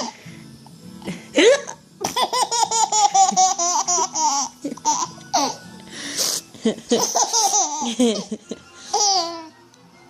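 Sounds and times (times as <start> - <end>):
baby laughing: 1.5 - 5.6, 6.6 - 9.5.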